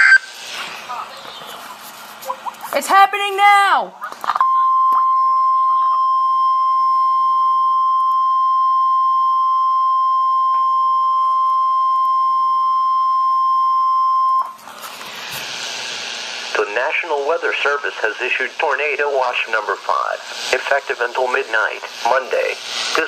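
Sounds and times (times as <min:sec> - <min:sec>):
radio static hiss: 0:00.0 - 0:02.9, 0:15.0 - 0:23.0
loud steady alarm beep: 0:04.4 - 0:14.6.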